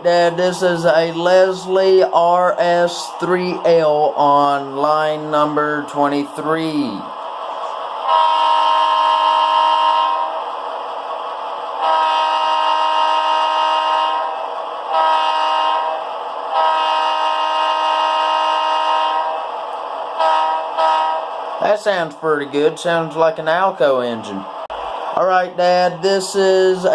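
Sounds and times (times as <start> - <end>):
air horn blasts: 8.1 - 10.4, 11.8 - 19.4, 20.2 - 21.3.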